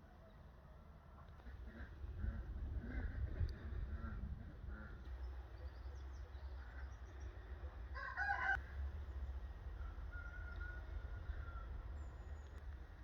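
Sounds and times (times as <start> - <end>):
low rumble: 1.4 - 8.0, 8.6 - 13.0
rooster crowing: 7.9 - 8.6, 9.8 - 11.8.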